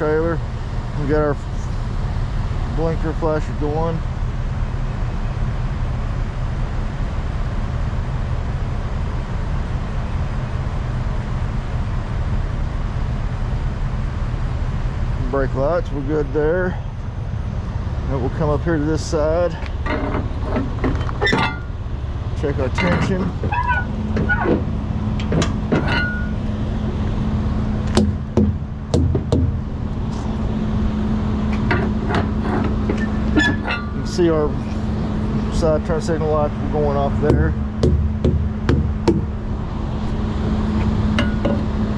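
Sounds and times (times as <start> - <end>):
truck diesel engine idling: 0.0 - 41.9
sharp short knocks: 27.9 - 29.6, 37.3 - 39.3.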